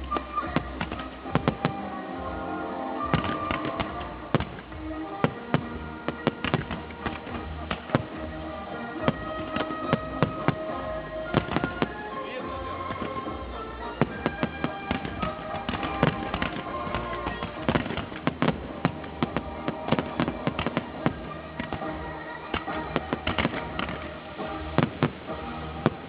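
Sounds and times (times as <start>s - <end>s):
fireworks bangs and crackling: 0.0s - 26.0s
music playing: 0.0s - 26.0s.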